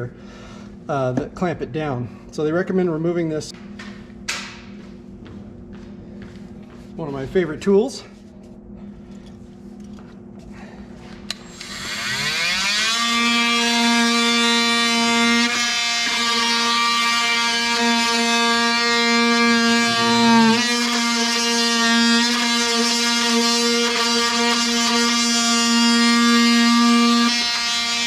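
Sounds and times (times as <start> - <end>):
cordless power tool whine: 11.2 - 28.0.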